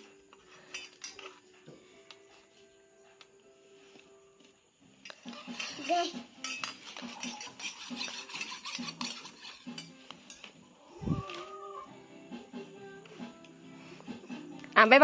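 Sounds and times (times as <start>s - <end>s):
faint background music: 0.0s - 15.0s
spoon clinking against cup: 5.1s - 10.5s.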